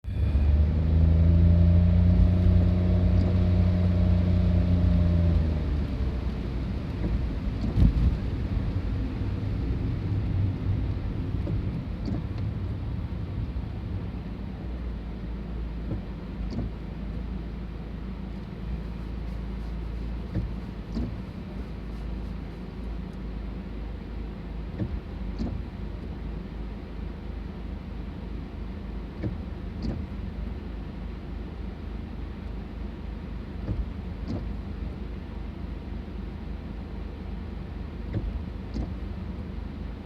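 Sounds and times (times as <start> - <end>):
diesel train rumbling: 0.0 - 16.4.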